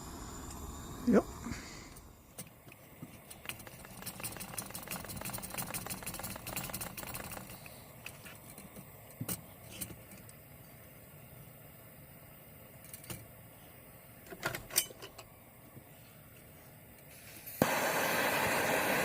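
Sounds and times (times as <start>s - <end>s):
metal lantern parts rattling: 3.2s - 10.3s.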